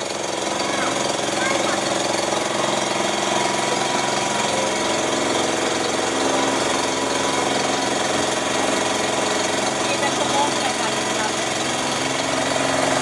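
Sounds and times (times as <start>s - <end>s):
boat engine chugging: 0.0s - 13.0s.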